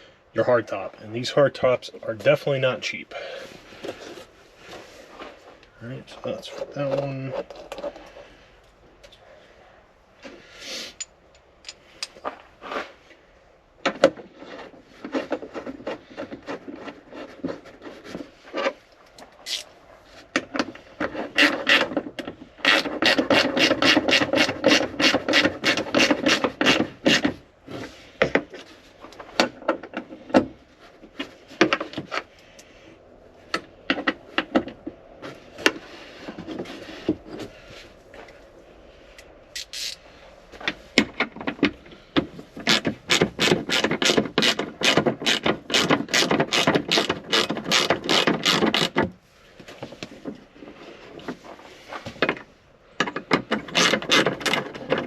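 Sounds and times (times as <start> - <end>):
hand tool clicks and knocks: 11.0 - 12.3, 53.0 - 55.0
ratchet wrench clicking: 39.6 - 40.0.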